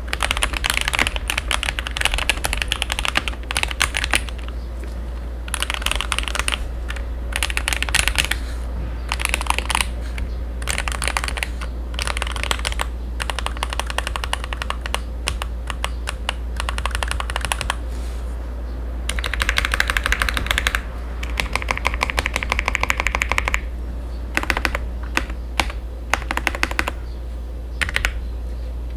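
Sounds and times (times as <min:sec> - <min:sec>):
mechanical keyboard keystroke clacks: 0:00.1 - 0:04.5, 0:05.5 - 0:08.4, 0:09.1 - 0:17.8, 0:19.1 - 0:23.6, 0:24.4 - 0:27.0
low hum: 0:02.5 - 0:13.2, 0:17.8 - 0:22.8.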